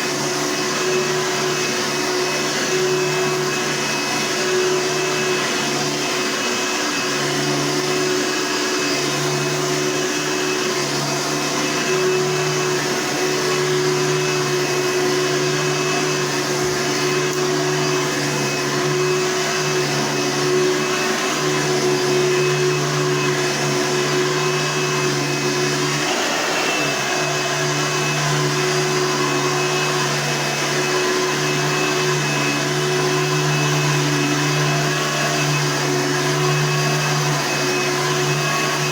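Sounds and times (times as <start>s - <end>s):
vacuum cleaner running: 0.0s - 38.9s.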